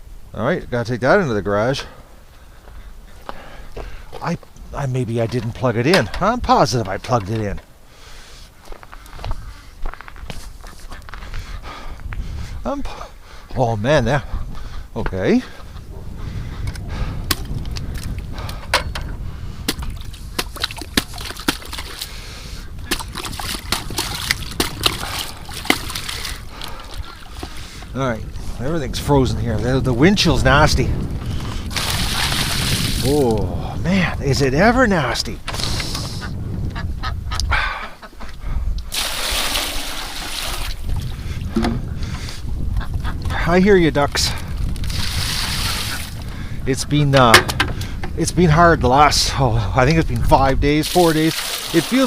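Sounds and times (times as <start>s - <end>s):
wind rumbling on microphone: 0.0s - 52.0s
sloshing water: 19.8s - 22.1s, 22.9s - 27.7s, 31.7s - 33.2s, 38.9s - 41.0s, 50.8s - 52.0s
ducks and geese calling: 35.8s - 38.6s
sharp knocks and clicks: 47.2s - 48.2s.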